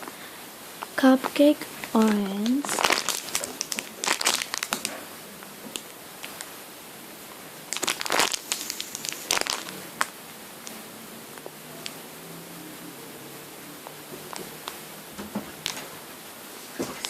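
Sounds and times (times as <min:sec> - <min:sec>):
squishy toy crinkling: 0:01.2 - 0:04.9, 0:07.7 - 0:10.1.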